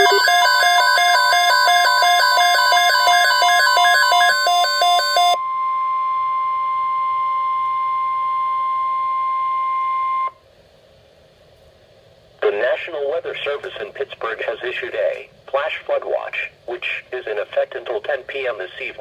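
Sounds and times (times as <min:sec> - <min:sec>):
high-pitched alert tone: 0:00.0 - 0:01.4
two-note electronic beeping: 0:00.0 - 0:05.4.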